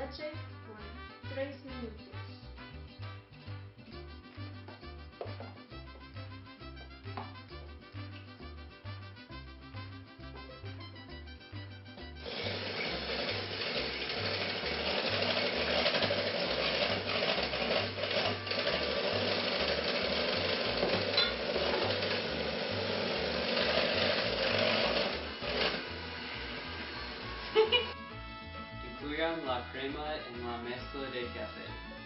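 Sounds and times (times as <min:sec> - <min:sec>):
electric mixer whipping cream: 0:12.2 - 0:28.0.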